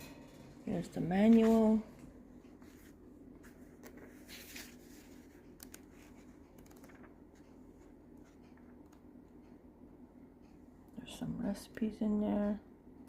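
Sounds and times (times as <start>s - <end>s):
paper rustling: 2.6s - 8.6s.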